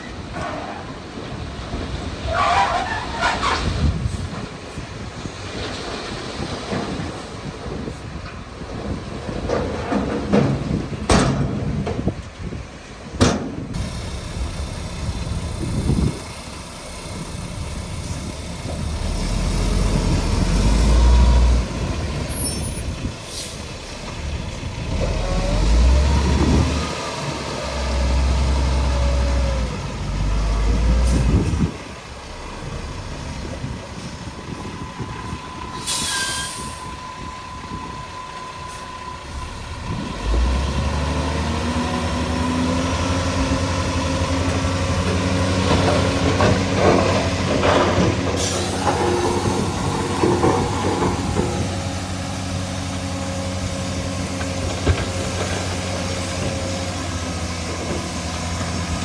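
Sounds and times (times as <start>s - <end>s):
diesel machinery engine rumble: 0.0s - 59.0s
air-brake hiss: 35.8s - 37.0s.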